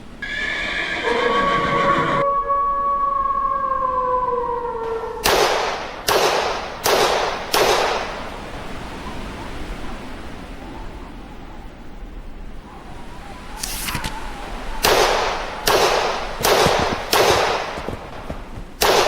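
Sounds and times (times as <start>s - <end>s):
horn-like tone sinking in pitch: 1.0s - 5.1s
sharp bangs with hiss: 5.2s - 8.8s, 13.6s - 19.0s.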